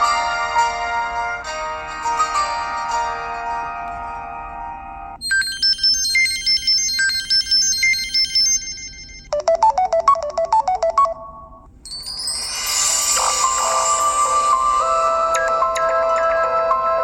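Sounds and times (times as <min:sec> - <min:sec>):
held chord-like ringtone: 0:00.0 - 0:17.0
bright high chiming melody: 0:11.8 - 0:17.0
fast tune of short notes: 0:11.9 - 0:17.0.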